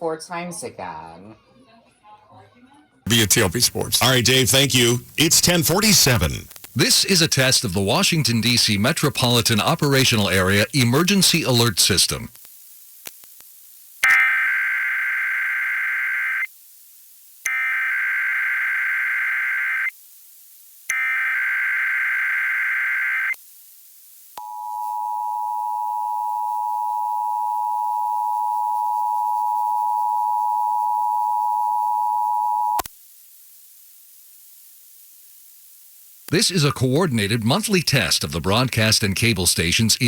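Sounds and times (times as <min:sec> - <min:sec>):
buzzy digital header bursts: 0:03.1 - 0:12.3.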